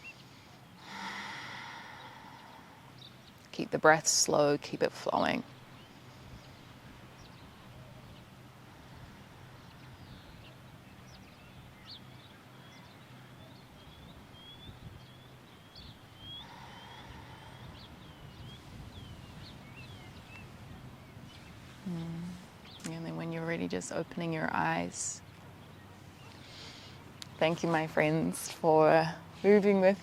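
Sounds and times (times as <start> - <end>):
low steady hum: 0.0 - 30.0
faint bird chirps: 5.4 - 22.9.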